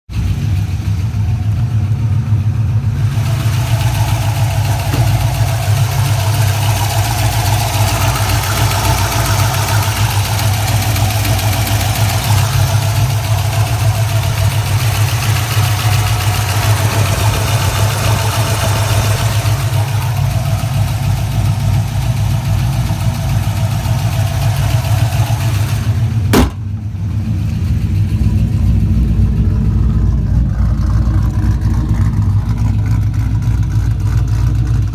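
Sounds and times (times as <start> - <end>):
car engine idling with lifter tick: 0.1 - 34.9.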